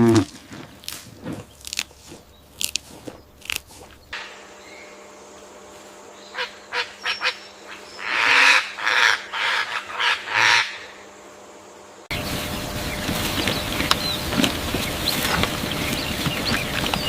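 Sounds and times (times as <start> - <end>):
waterfowl rasping calls: 6.3 - 10.9.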